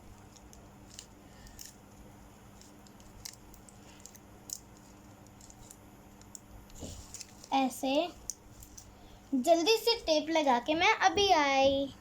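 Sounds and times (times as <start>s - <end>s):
low steady hum: 0.0s - 12.0s
adhesive tape being handled: 0.2s - 8.9s.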